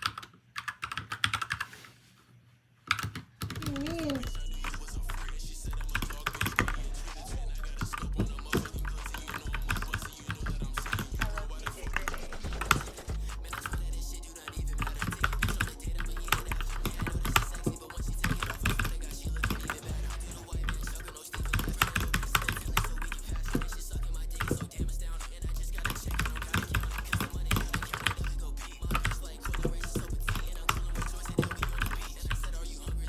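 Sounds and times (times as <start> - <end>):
mechanical keyboard typing: 0.0 - 1.8, 2.9 - 4.2, 6.0 - 6.7, 7.8 - 13.7, 14.8 - 23.8, 24.4 - 24.8, 25.8 - 28.2, 28.9 - 32.5
hip-hop music with steady beat: 3.6 - 33.0.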